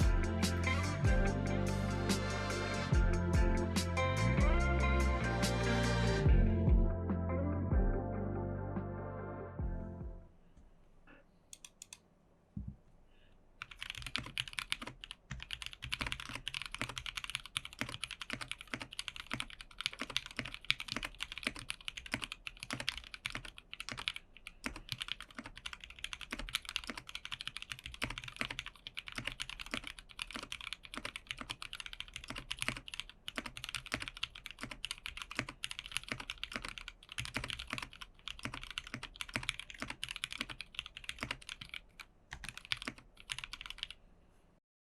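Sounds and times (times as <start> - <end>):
mechanical keyboard typing: 13.6 - 44.0.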